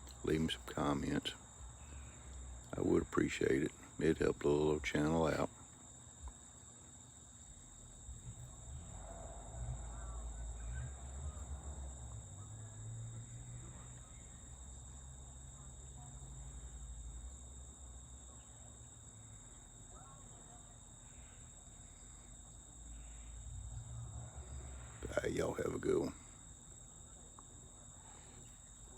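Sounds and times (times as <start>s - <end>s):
insects droning: 0.0s - 28.9s
faint low rumble: 7.6s - 28.9s.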